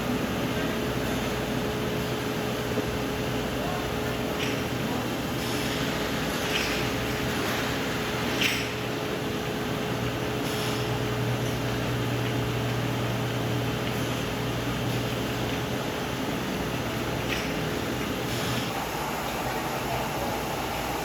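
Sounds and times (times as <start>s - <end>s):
machinery hiss: 10.4s - 10.9s, 18.2s - 21.0s.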